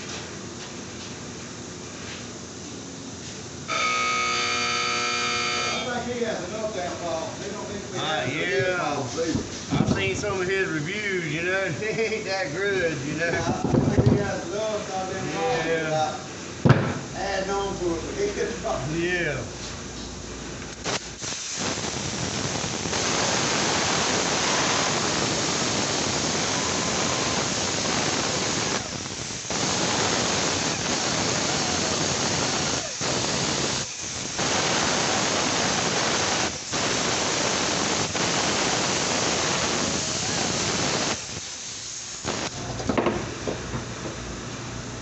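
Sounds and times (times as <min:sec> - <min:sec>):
loud hissing rush: 0:20.8 - 0:42.8.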